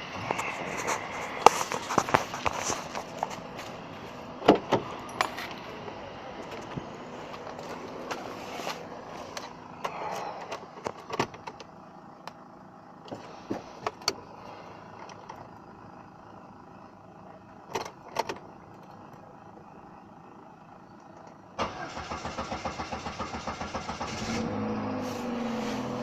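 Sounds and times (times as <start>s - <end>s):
car keys jangling: 4.5s - 8.2s.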